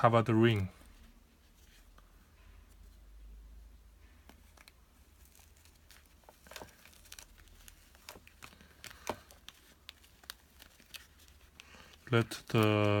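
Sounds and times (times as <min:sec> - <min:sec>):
ear pad rustling and clicking: 0:04.0 - 0:13.0.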